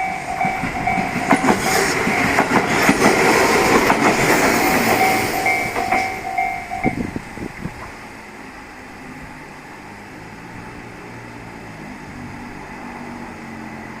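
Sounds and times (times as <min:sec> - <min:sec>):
level crossing bell ringing: 0:00.0 - 0:02.4, 0:04.8 - 0:07.1
train passing: 0:00.0 - 0:14.0.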